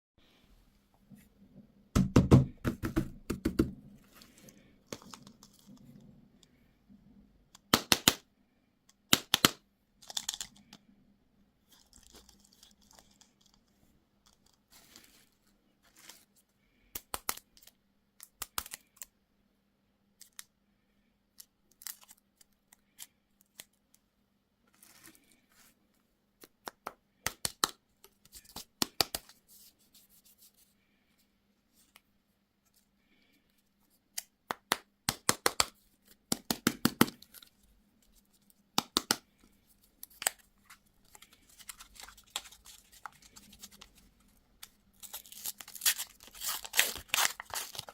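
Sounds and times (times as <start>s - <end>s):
crinkly packaging being torn: 41.1s - 44.0s, 44.6s - 47.9s.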